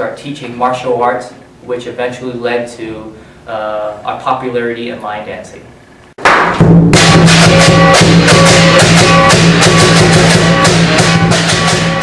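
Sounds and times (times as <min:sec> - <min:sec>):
loud music with fast drums: 0:06.3 - 0:12.0.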